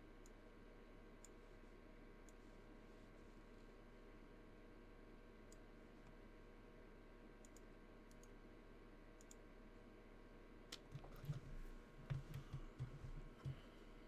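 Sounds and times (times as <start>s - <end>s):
computer mouse clicks: 7.4s - 8.4s, 9.2s - 9.4s, 10.7s - 13.7s.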